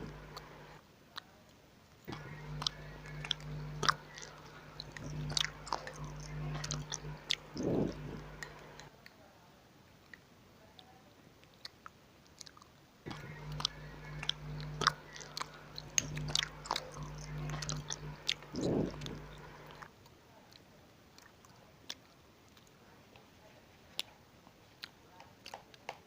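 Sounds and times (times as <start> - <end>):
low hum: 0.0 - 0.8, 2.1 - 8.9, 13.1 - 19.9.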